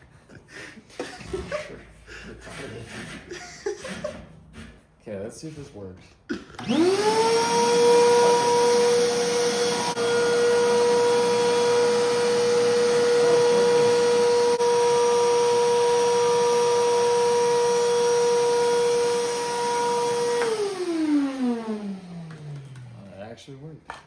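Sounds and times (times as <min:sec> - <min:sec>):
vacuum motor winding down: 0:06.5 - 0:23.3
vacuum cleaner running: 0:06.6 - 0:23.3.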